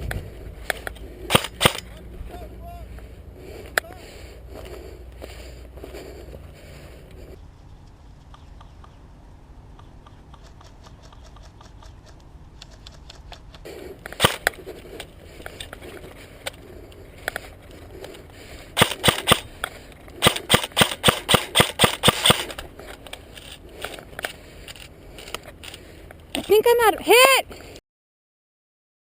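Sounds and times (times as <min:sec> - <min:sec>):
airsoft rifle shots: 0:01.3 - 0:01.9, 0:14.2 - 0:14.6, 0:18.8 - 0:19.5, 0:20.2 - 0:22.6.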